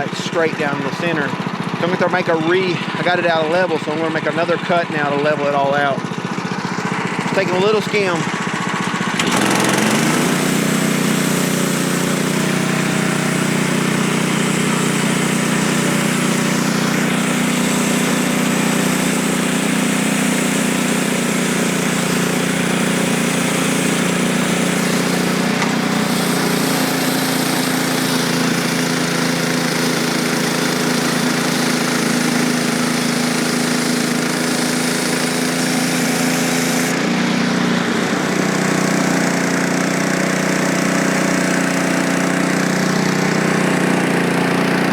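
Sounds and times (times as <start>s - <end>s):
small gas engine running: 0.0s - 44.9s
saw blade cutting hiss: 9.3s - 37.0s.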